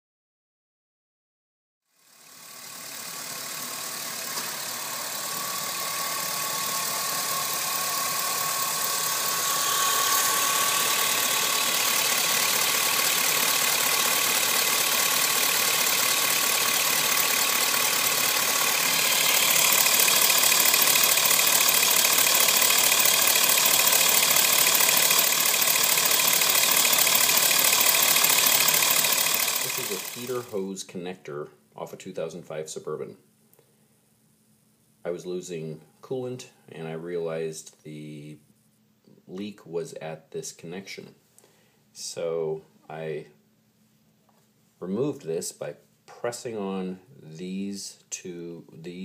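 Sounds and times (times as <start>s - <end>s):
mechanical running noise: 2.0s - 30.6s.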